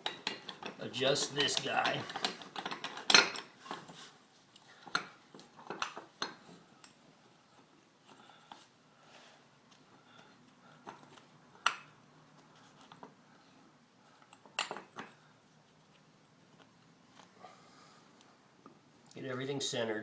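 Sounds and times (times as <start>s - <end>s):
metal parts clinking: 0.0s - 3.9s.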